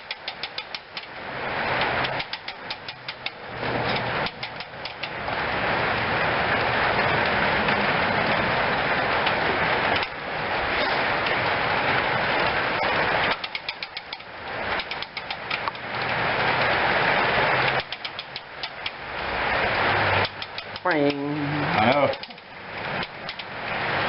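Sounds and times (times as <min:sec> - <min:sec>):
sharp clicks of winding key: 0:00.0 - 0:01.1, 0:02.0 - 0:05.2, 0:13.3 - 0:15.8, 0:17.7 - 0:19.0, 0:21.9 - 0:23.5
clockwork mechanism clattering: 0:00.0 - 0:24.0.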